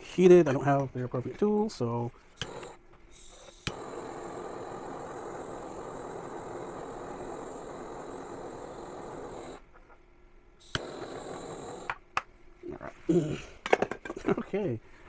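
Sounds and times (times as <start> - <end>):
heating tool rushing: 2.4 - 9.7, 10.6 - 12.1.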